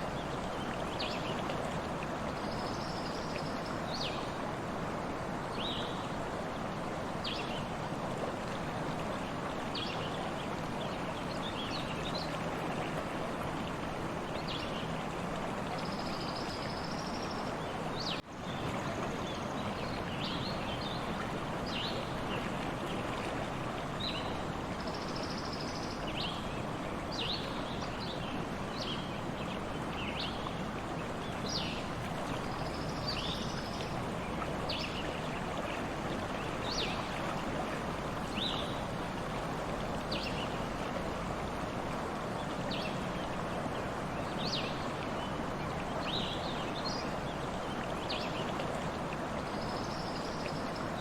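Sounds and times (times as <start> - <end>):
stream running: 0.0 - 51.0.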